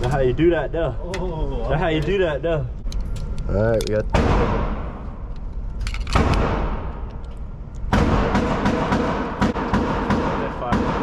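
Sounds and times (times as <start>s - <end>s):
gunshots echoing indoors: 4.1s - 5.3s, 6.1s - 7.2s, 7.9s - 11.0s.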